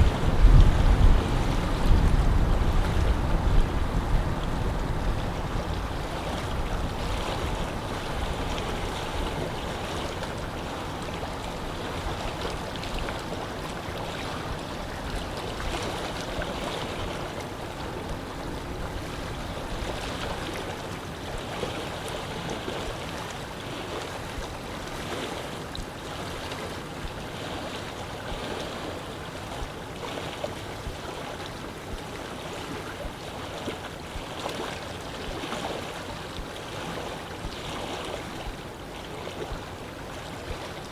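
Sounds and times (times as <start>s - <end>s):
wind blowing: 0.0s - 13.3s
small waves lapping: 0.0s - 40.9s.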